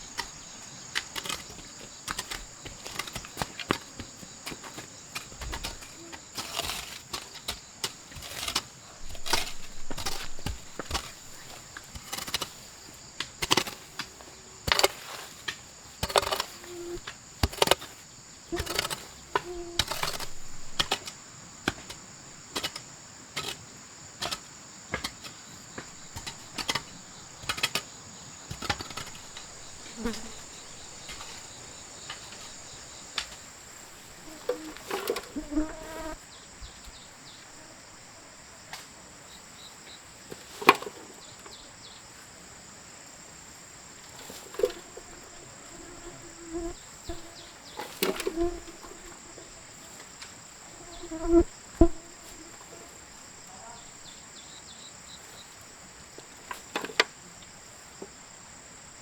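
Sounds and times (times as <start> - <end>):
high insect chirring: 16.4 - 17.1, 18.2 - 21.1, 28.4 - 36.2, 44.8 - 49.7, 50.7 - 52.5.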